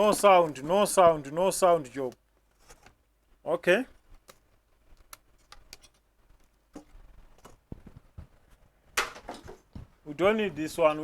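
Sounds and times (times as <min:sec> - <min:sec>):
dull thumps: 0:06.7 - 0:10.4.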